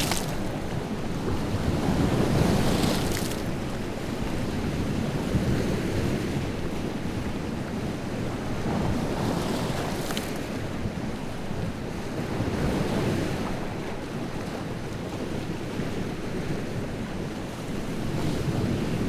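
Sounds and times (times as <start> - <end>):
wave crashing with splash: 0.0 - 0.8
lake waves breaking on shore: 0.0 - 4.2.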